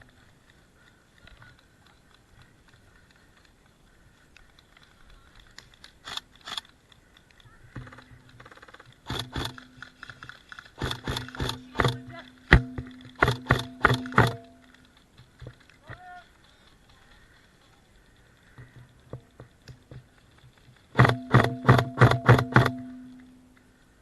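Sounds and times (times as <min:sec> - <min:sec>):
airsoft guns firing: 0:07.7 - 0:14.8, 0:20.9 - 0:23.3.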